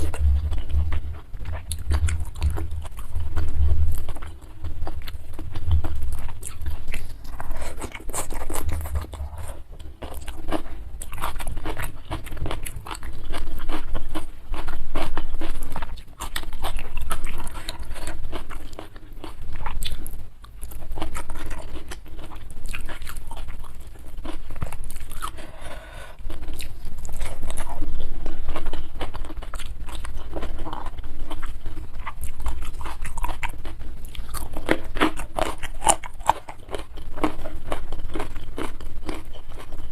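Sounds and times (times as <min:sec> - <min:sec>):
chewing and crunching food: 0:00.0 - 0:39.9.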